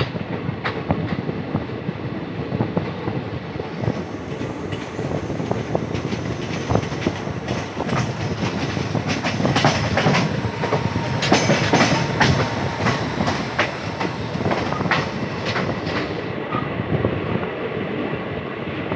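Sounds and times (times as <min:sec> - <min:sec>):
train wheels clattering: 0:03.7 - 0:16.7.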